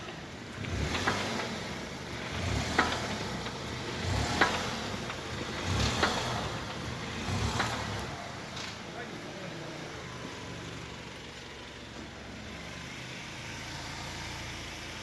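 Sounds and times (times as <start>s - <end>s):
car suspension knocking: 0.0s - 8.9s.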